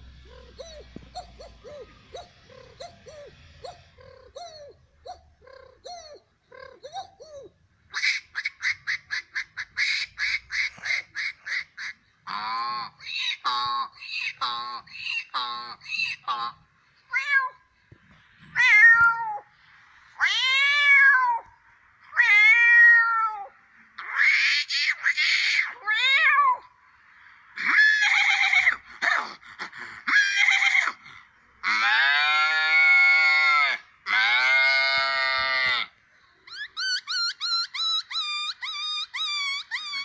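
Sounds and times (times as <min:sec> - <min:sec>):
man making held calls: 0:00.3 - 0:16.6.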